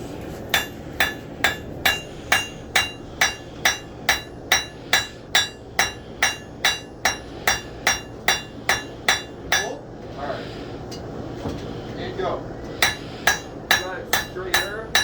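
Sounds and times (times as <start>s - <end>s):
hammer striking steel on anvil: 0.5s - 9.8s, 12.8s - 15.0s.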